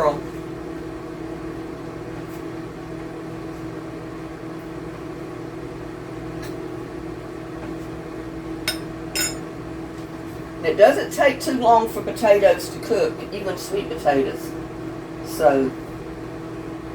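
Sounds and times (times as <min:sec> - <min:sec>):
steady mechanical hum: 0:00.0 - 0:16.9
short clinks: 0:08.7 - 0:09.4.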